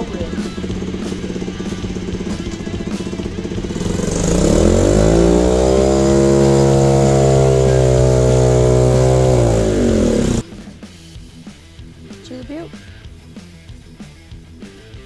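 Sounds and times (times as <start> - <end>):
dirt bike engine revving: 0.0 - 10.4.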